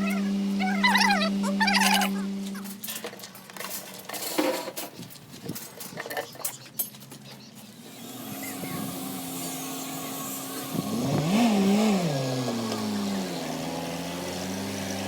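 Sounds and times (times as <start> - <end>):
engine running and revving: 0.0 - 3.0, 7.8 - 15.0.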